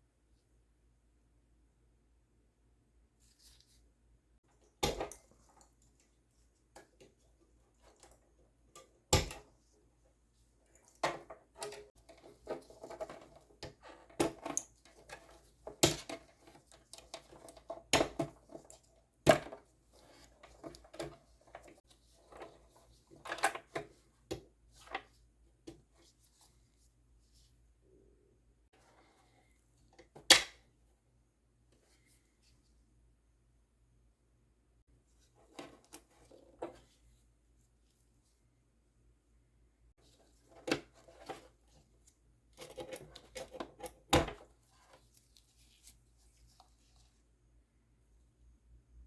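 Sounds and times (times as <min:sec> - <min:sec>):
rattling and scraping of parts: 0:10.8 - 0:24.0.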